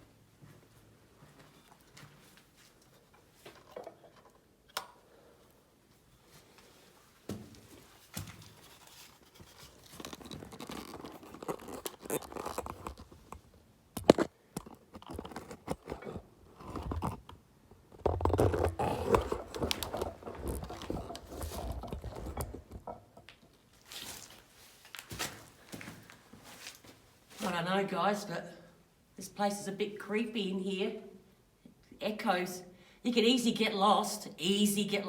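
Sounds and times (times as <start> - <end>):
scraping and crunching: 6.2 - 27.6.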